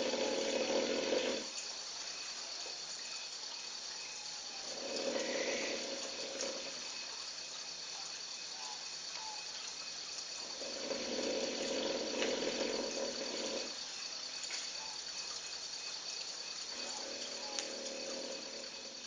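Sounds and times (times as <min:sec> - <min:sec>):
lion snoring: 0:00.0 - 0:01.5, 0:04.6 - 0:07.1, 0:10.4 - 0:13.8, 0:16.7 - 0:19.0.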